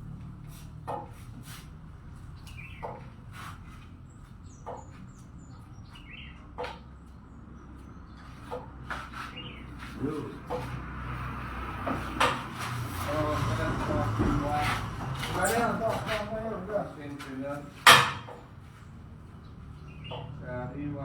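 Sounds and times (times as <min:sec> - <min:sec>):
sharp knocks: 0:17.8 - 0:18.5.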